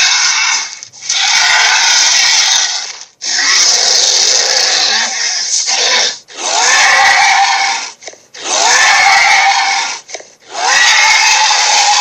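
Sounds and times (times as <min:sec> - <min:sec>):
monster roars: 0:00.0 - 0:07.7.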